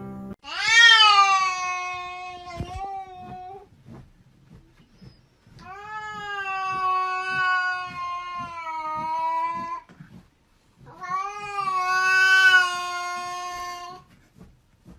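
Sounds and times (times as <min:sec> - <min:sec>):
cat meowing: 0:00.4 - 0:03.6, 0:05.7 - 0:09.8, 0:10.9 - 0:14.0.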